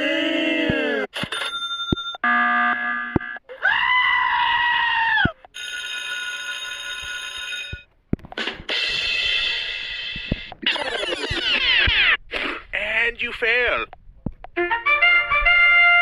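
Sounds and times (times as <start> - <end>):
held ringing tone: 1.2 - 2.2
scream-like call: 3.5 - 5.4.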